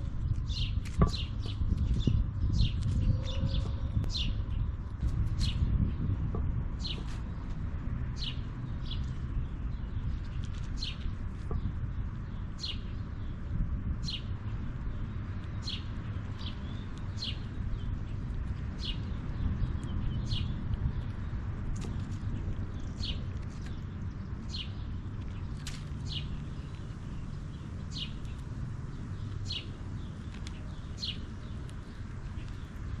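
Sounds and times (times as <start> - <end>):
steady low rumble: 0.0 - 33.0
bird chirping: 0.4 - 4.7, 22.8 - 33.0.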